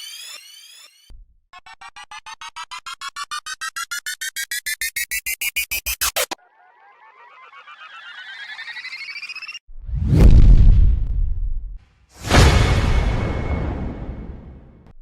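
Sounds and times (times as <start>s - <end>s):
rising electronic beeps: 0.0s - 9.6s.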